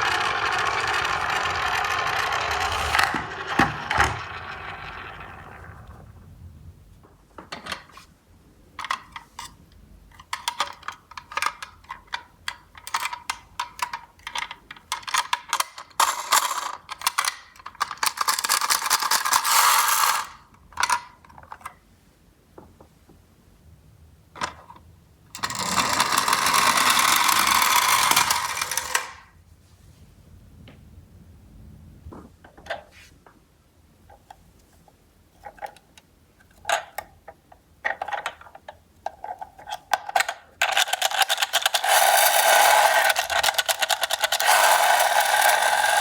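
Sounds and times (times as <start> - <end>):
toy cars clattering: 0.0 - 6.1, 10.2 - 21.6, 25.4 - 29.3, 37.8 - 46.0.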